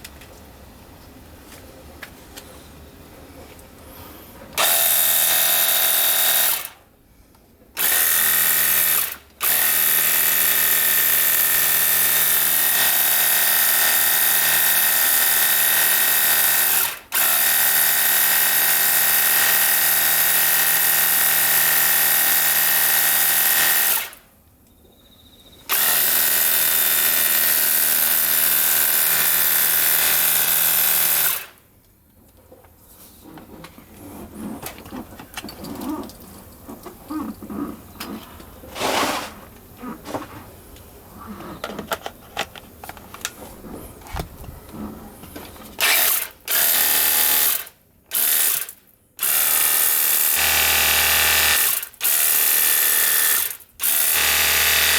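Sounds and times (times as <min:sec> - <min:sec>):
pressure washer pump whining: 0:49.2 - 0:54.9.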